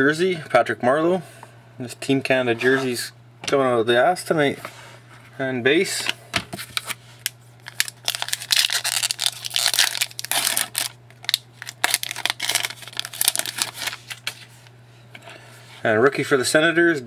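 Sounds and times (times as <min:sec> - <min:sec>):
low steady hum: 0:00.0 - 0:17.0
plastic packaging crinkling: 0:06.7 - 0:14.7.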